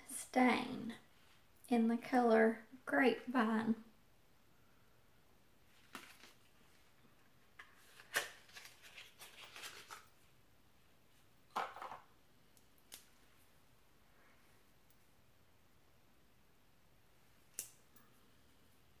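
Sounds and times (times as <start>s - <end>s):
crackly packaging rustling: 5.7s - 10.3s.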